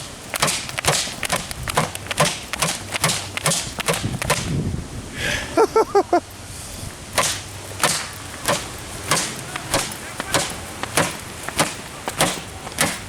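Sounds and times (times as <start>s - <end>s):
belt cracking on speaker box: 0.0s - 4.6s, 7.1s - 13.0s.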